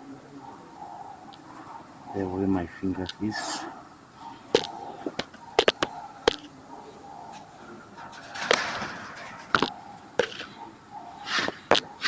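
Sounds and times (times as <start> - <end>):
scraping rustle: 3.1 - 12.0
sharp clicks and knocks: 8.0 - 10.5.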